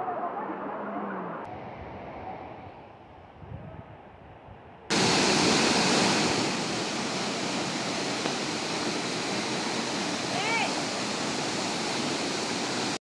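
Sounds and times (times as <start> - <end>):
waterfall rushing: 4.9 - 13.0.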